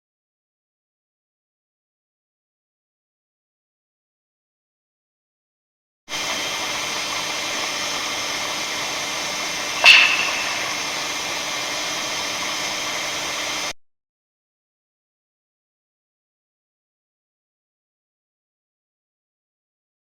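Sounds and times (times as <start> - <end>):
recording hiss: 6.1 - 13.7
sharp clap: 9.8 - 10.9.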